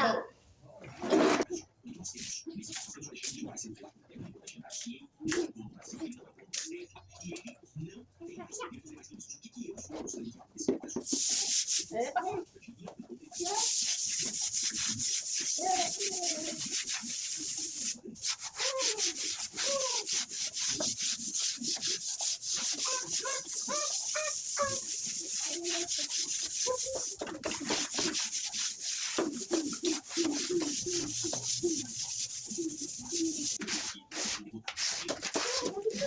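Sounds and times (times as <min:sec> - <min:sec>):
rapid scrubbing strokes: 0:13.3 - 0:36.0.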